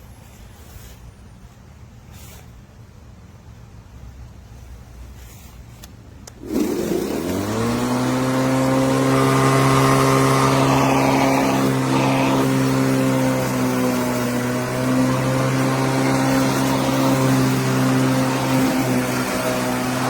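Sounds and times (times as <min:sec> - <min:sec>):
lawn mower motor humming: 0:06.2 - 0:20.0.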